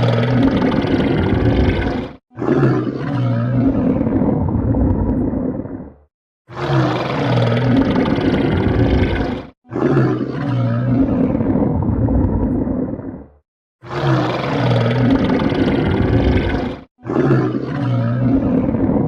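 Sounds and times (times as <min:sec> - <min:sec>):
stomach growling: 0:00.0 - 0:06.0, 0:06.6 - 0:19.0.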